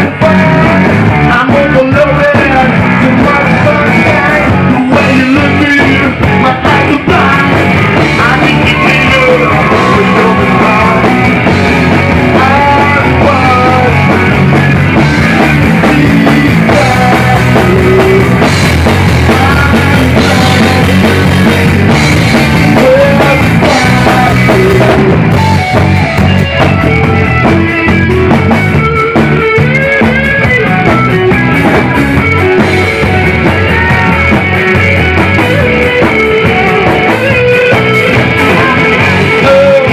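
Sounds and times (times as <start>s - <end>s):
person singing: 0.0s - 25.6s, 31.7s - 39.9s
drum kit: 0.0s - 39.9s
electric guitar: 0.0s - 39.9s.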